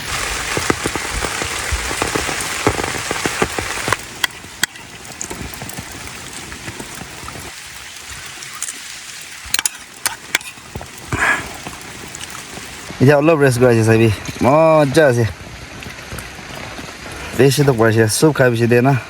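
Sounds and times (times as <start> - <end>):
single raindrops: 0.0 - 13.0
heavy rain falling: 0.0 - 19.0.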